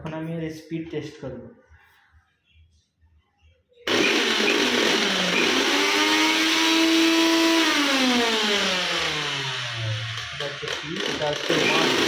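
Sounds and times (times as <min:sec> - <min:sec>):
mixer grinder motor whine: 0:03.9 - 0:12.0.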